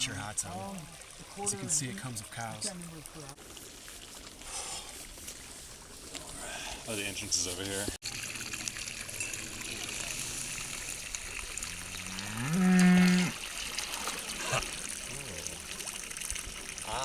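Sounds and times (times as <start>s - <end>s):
cow mooing: 11.7s - 13.4s.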